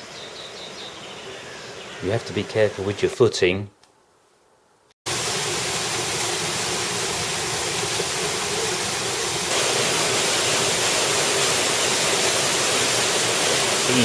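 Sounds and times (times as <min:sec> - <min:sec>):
waterfall rushing over rock: 0:05.1 - 0:14.0.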